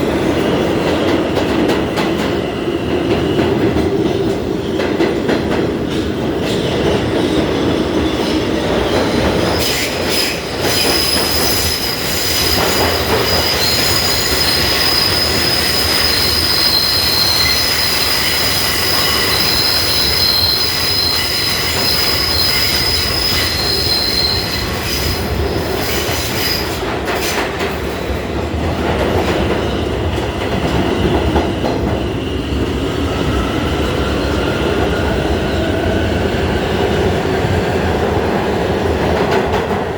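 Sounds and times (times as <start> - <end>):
subway cars rumbling and rattling: 0.0 - 39.9
subway wheels squealing: 0.0 - 39.9.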